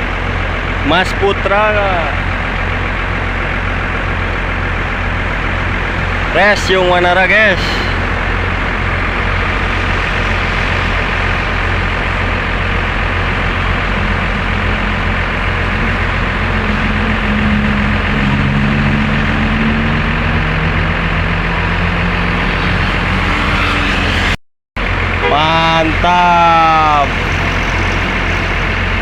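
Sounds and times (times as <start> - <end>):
large vehicle engine running low: 0.0 - 29.0
roadside traffic noise: 0.0 - 29.0.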